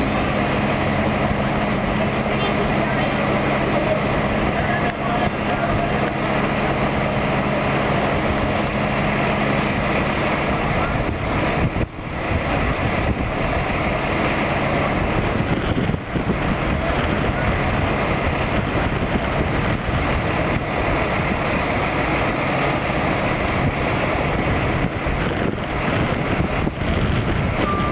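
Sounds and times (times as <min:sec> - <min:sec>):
heavy vehicle engine running: 0:00.0 - 0:27.9
wind on microphone: 0:10.4 - 0:22.0, 0:23.2 - 0:27.9.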